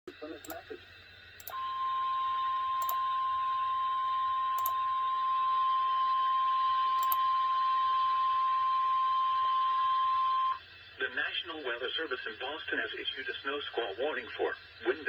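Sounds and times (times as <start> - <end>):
faint radio hiss: 0.1 - 3.8, 10.6 - 15.0
soft clicks: 1.4 - 1.6, 7.0 - 7.2.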